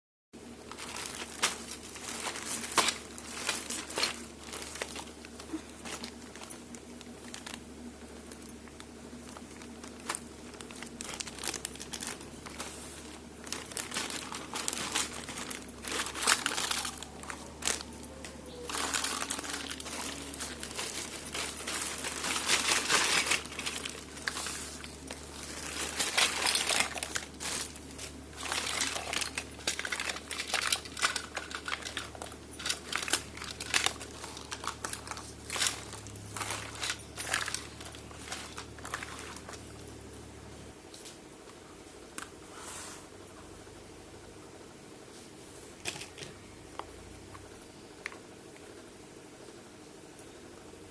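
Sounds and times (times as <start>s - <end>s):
toy packaging crinkling: 0.6s - 7.7s, 8.3s - 40.0s.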